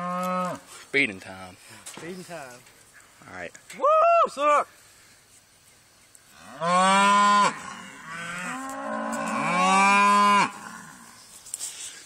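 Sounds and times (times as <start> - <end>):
cattle mooing: 6.4 - 11.1.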